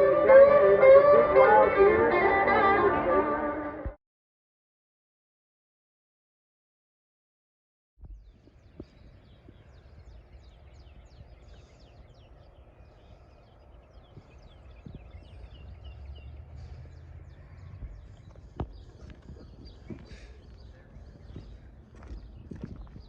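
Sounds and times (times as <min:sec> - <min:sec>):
birds chirping: 0:08.0 - 0:23.0
steady low rumble: 0:08.1 - 0:23.0.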